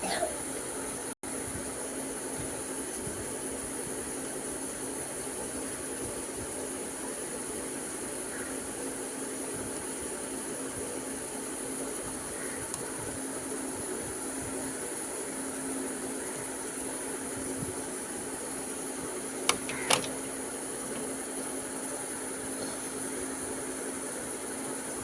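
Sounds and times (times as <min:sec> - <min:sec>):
sharp clicks: 0:19.5 - 0:21.1.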